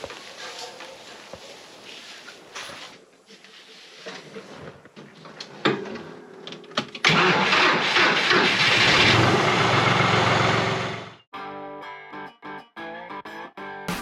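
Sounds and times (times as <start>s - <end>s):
tractor diesel engine running: 7.0s - 11.2s.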